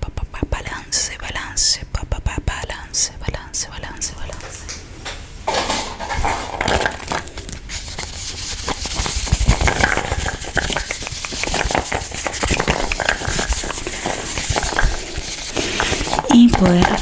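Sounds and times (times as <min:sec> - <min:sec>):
fast crackling and crinkling: 0:04.0 - 0:17.0.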